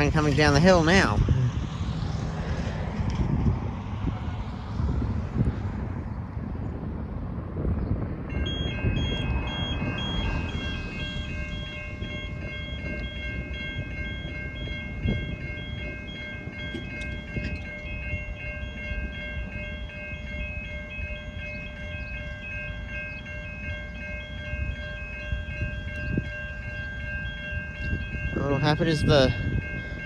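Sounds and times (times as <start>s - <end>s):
constant high whine: 0.0s - 30.0s
diesel trains rumbling: 0.0s - 30.0s
electronic chime: 8.3s - 30.0s.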